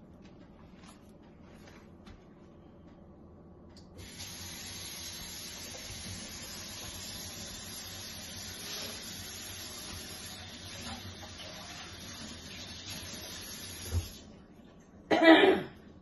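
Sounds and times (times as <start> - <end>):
steady hiss: 4.0 - 10.8.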